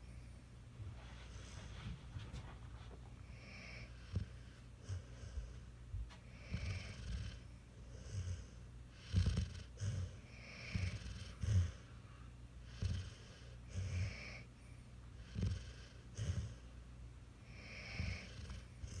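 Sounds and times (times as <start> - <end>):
puppy snoring: 3.2 - 5.7, 6.3 - 11.9, 12.6 - 14.5, 15.2 - 16.7, 17.4 - 19.0.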